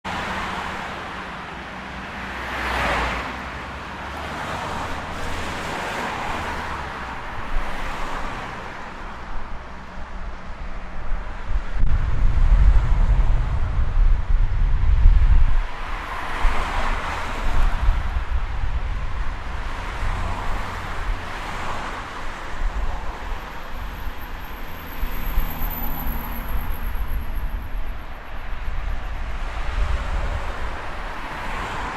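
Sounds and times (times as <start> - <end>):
passing cars with tyre noise: 0.0 - 31.9
road traffic: 0.0 - 31.9
car passing close: 2.2 - 8.8.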